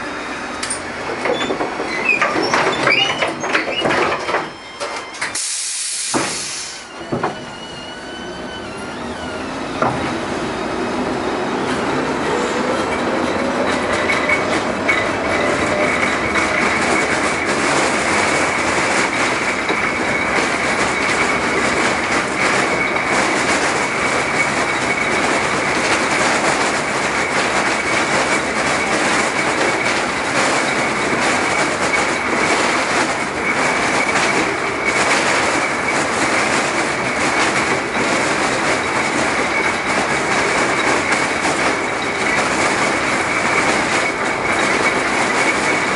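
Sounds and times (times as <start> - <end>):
high wheel squeal: 0.0 - 9.8, 12.2 - 25.7, 36.9 - 45.9
tram motor whine: 0.0 - 45.9
wheels clacking over rail joints: 0.6 - 5.4, 11.6 - 45.9.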